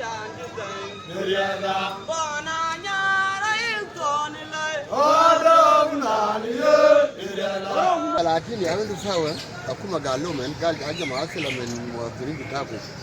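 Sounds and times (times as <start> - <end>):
voices singing a chant: 0.0 - 8.4.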